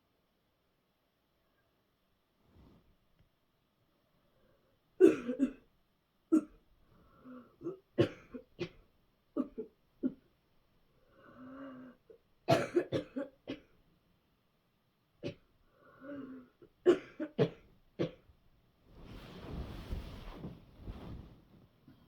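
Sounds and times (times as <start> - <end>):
person coughing hard: 5.0 - 5.6, 7.6 - 8.8, 12.5 - 13.7, 16.2 - 18.2.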